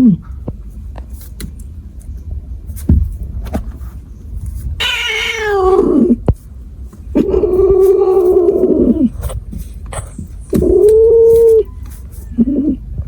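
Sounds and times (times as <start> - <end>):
cat meowing: 4.8 - 6.2.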